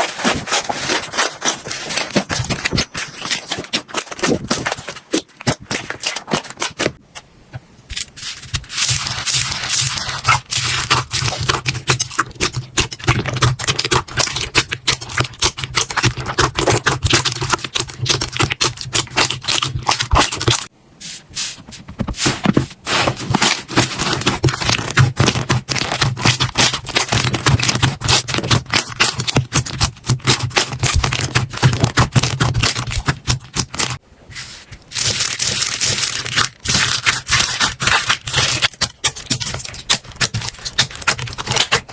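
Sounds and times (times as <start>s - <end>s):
slime crackling and popping: 8.6s - 20.7s, 34.9s - 41.9s.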